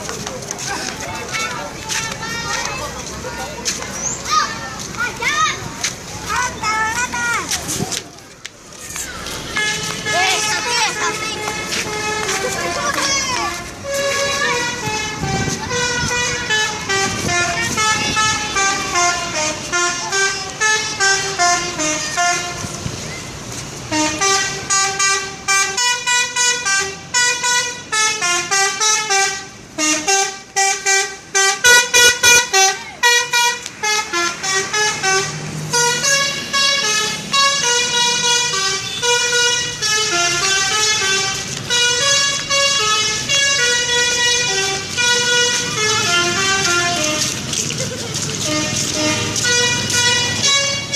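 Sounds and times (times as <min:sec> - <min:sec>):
multi-note bus air horn tune: 0:09.6 - 0:13.0, 0:13.6 - 0:22.8, 0:23.9 - 0:47.3, 0:48.4 - 0:50.9.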